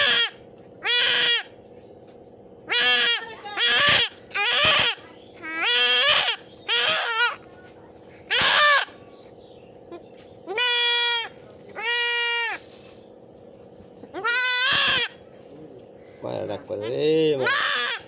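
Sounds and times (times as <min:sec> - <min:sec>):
goat kid bleating: 0:00.0 - 0:01.5, 0:02.7 - 0:07.5, 0:08.3 - 0:09.0, 0:09.9 - 0:12.6, 0:14.1 - 0:15.2, 0:16.7 - 0:18.0.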